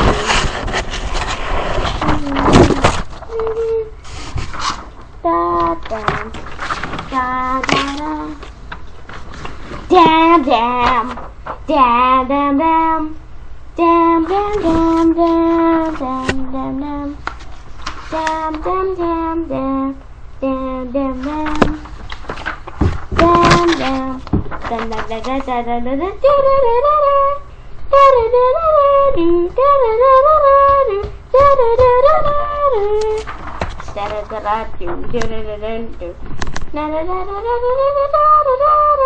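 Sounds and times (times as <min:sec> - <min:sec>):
high voice singing: 0:02.0 - 0:04.0, 0:07.1 - 0:08.4, 0:23.2 - 0:33.3.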